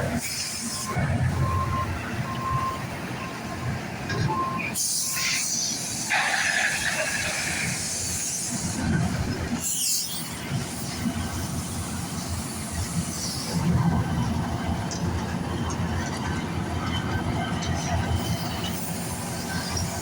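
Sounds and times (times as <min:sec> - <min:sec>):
heavy machinery rumbling: 0:00.0 - 0:20.0.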